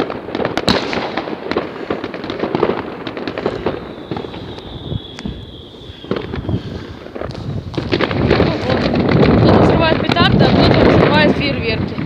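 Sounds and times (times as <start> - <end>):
firecrackers popping and banging: 0.0 - 12.0
high firework whistle: 3.2 - 8.1.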